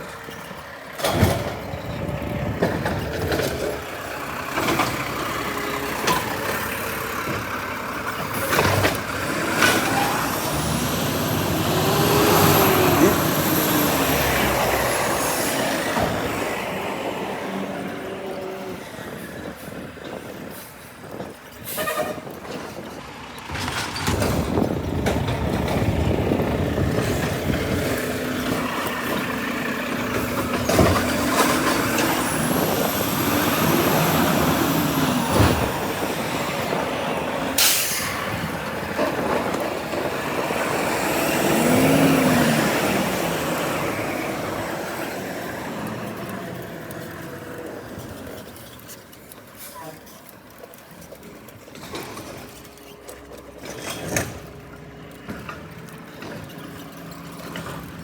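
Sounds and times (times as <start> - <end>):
garbage truck engine revving: 0.0 - 20.6, 22.8 - 48.6.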